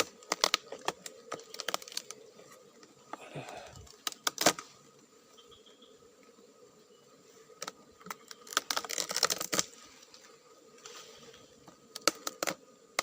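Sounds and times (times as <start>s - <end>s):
dry tree trunk crackling: 0.0s - 4.8s, 7.6s - 13.0s
soft rustle: 7.2s - 11.8s.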